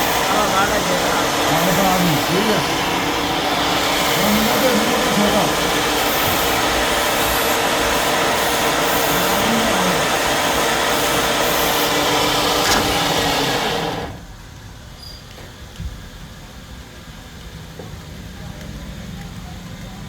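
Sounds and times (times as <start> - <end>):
machine rushing noise: 0.0 - 14.3.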